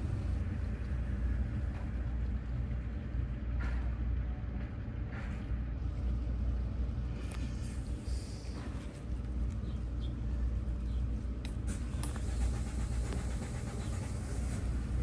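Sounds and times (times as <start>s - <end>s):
diesel engine running: 0.0s - 6.2s, 11.4s - 15.0s.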